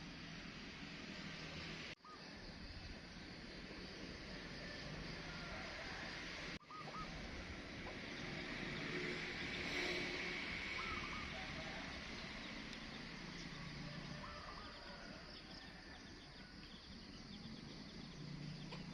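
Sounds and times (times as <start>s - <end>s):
outdoor background noise: 0.0s - 18.9s.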